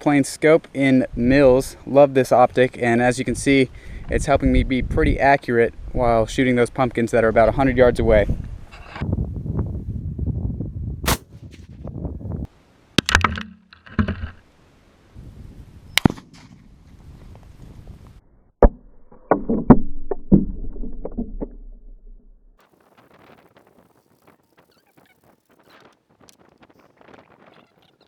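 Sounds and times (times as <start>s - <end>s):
rifle shots with rumble: 11.0s - 11.8s.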